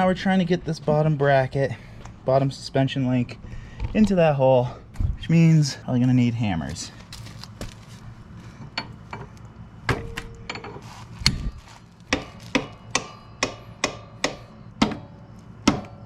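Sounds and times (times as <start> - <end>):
hammer striking metal: 12.1 - 16.0.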